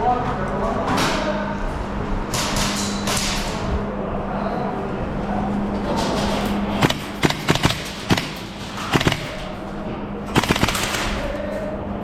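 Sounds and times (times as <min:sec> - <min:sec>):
airsoft guns firing: 0:06.8 - 0:09.6, 0:10.3 - 0:11.4.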